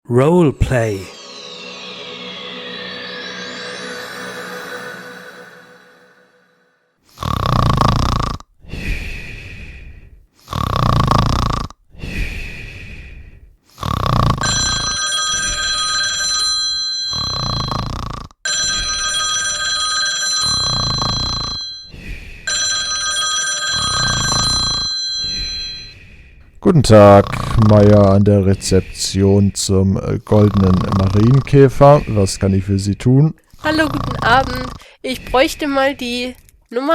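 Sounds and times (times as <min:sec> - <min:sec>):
man snoring loudly: 0:07.1 - 0:08.5, 0:10.4 - 0:11.8, 0:13.7 - 0:14.9, 0:17.1 - 0:18.4, 0:20.4 - 0:22.0, 0:23.7 - 0:26.0, 0:26.9 - 0:28.8, 0:30.2 - 0:32.3, 0:33.6 - 0:34.9
telephone ringing: 0:14.4 - 0:26.0, 0:33.6 - 0:34.8.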